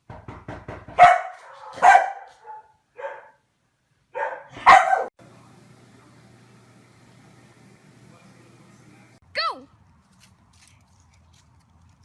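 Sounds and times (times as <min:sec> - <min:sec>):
dog barking: 0:00.9 - 0:03.4, 0:04.1 - 0:05.2.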